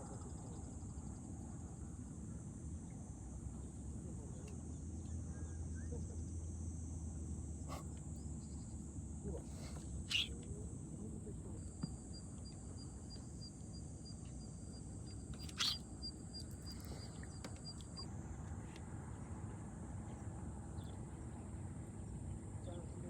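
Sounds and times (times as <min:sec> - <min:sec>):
rapid ticking insect call: 0:00.0 - 0:18.1
insects hissing: 0:09.5 - 0:10.4, 0:15.4 - 0:17.4.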